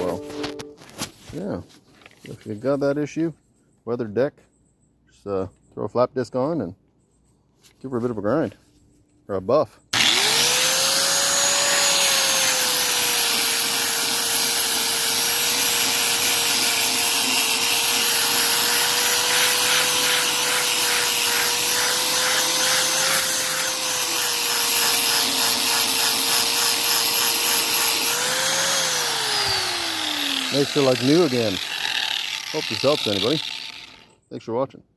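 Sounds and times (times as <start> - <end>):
angle grinder sanding wood: 10.0 - 34.1.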